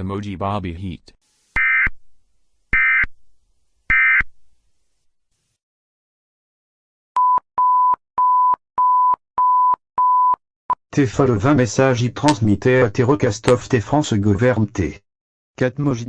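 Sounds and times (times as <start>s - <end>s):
digital data tones: 1.6s - 1.9s.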